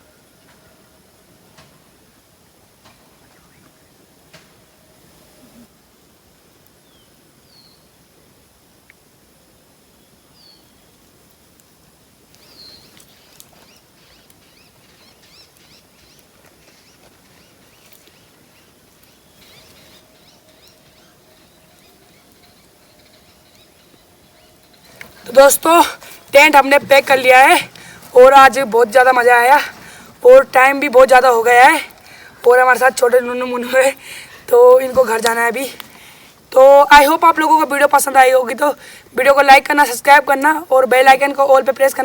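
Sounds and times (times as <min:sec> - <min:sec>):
birds chirping: 0:12.4 - 0:42.0.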